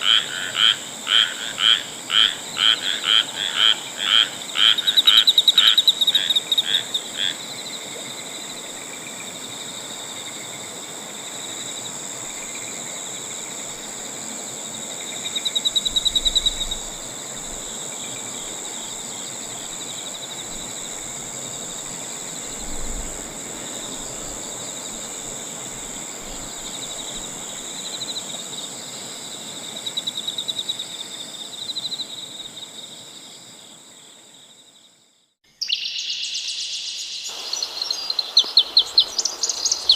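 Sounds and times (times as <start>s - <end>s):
frogs croaking: 0.0s - 9.2s, 14.9s - 28.3s, 35.5s - 39.9s
crickets droning: 0.0s - 39.9s.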